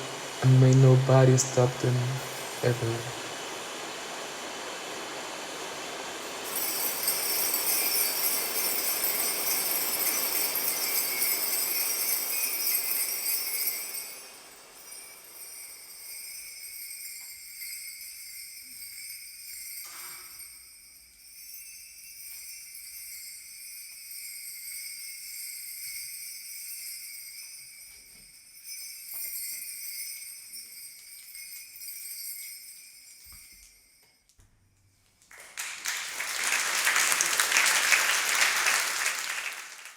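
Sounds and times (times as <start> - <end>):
bronze bells jingling: 0.0 - 3.5, 6.2 - 34.3, 35.6 - 39.9
rushing hiss: 0.0 - 19.1.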